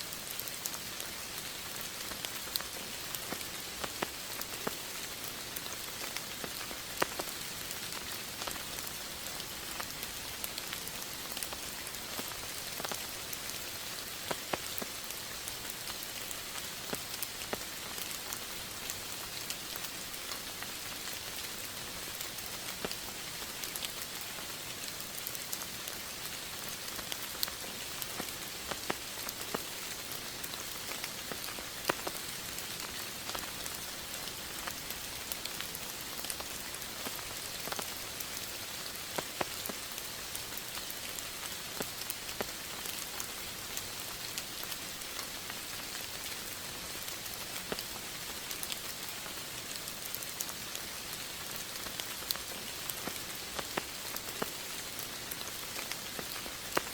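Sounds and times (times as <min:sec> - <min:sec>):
raindrops ticking: 0:00.0 - 0:56.9
steady rain hiss: 0:00.0 - 0:56.9.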